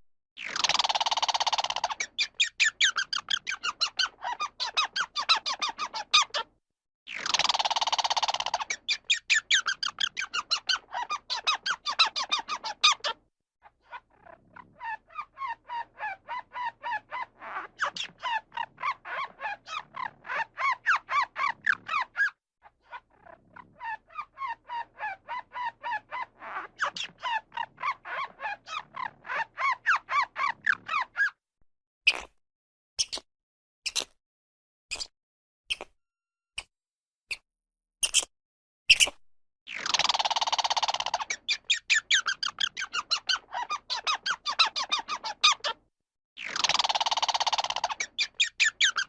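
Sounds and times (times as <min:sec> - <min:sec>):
squirrel alarm chatter: 0:00.4 - 0:06.5, 0:07.1 - 0:13.2, 0:13.9 - 0:31.3, 0:39.7 - 0:45.8, 0:46.4 - 0:49.0.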